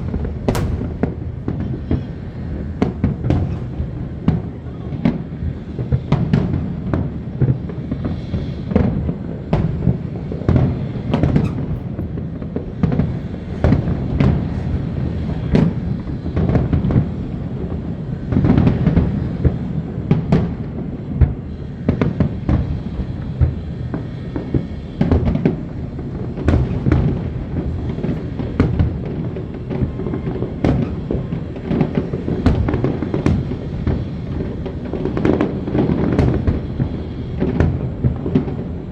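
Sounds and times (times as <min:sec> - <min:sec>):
low rumble: 0:00.0 - 0:02.8
fireworks bangs and booms: 0:00.0 - 0:38.9.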